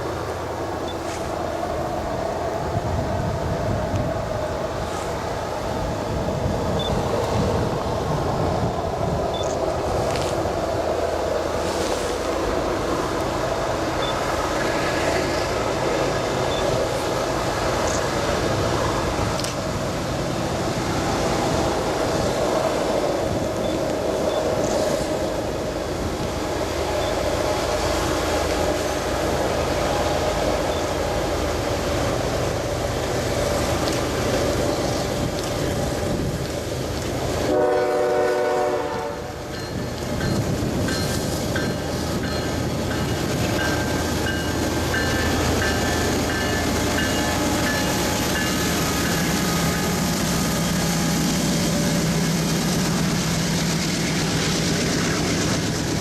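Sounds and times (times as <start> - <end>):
diesel locomotive engine drone: 0.0 - 56.0
locomotive air horn blast: 37.5 - 39.5.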